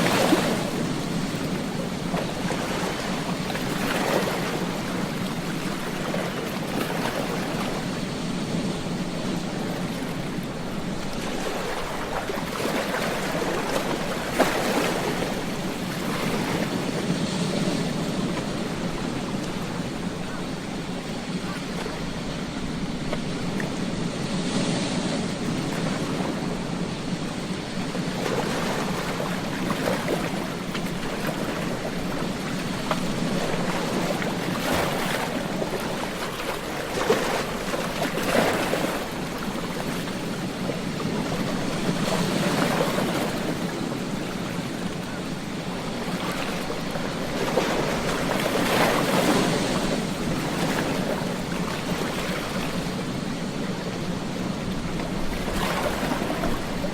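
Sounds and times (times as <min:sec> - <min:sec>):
ocean waves breaking on beach: 0:00.0 - 0:56.9.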